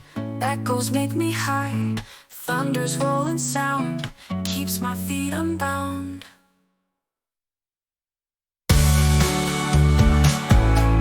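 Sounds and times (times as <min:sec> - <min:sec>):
instrumental music with heavy bass: 0:08.7 - 0:11.0.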